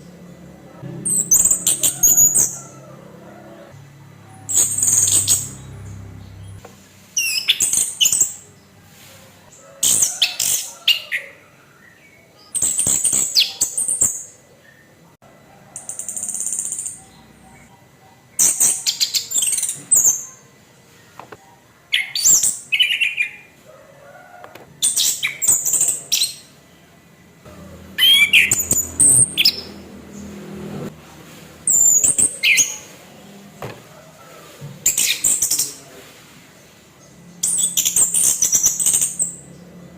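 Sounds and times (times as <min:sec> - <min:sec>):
thrush singing: 0:27.5 - 0:31.0.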